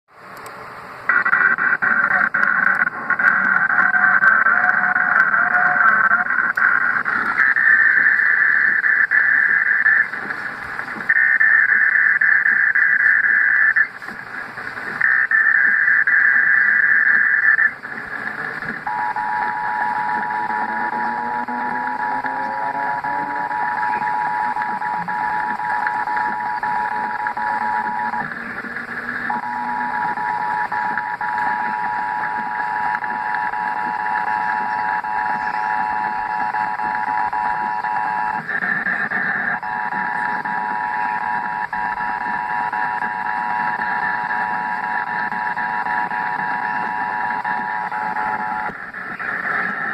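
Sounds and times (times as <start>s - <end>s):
buzzy digital bursts: 1.1s - 49.9s
two-tone attention signal: 18.8s - 28.2s, 29.2s - 38.4s.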